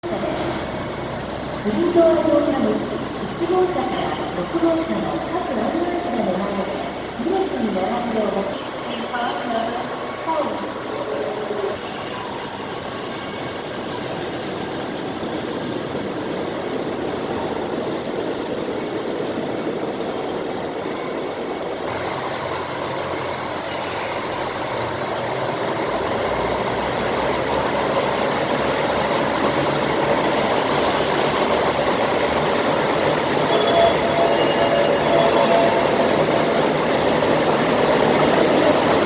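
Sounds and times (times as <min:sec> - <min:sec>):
train rumbling: 0:00.0 - 0:39.0
high whining tones: 0:31.9 - 0:38.5.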